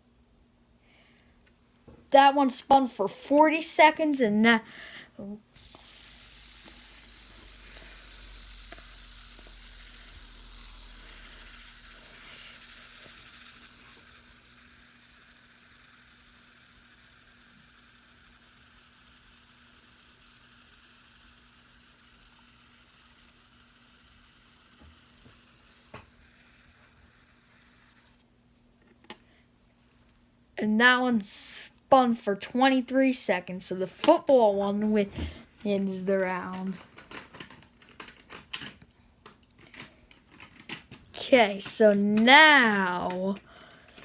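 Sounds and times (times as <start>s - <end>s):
fidget spinner whirring: 5.4s - 28.3s, 40.4s - 44.0s.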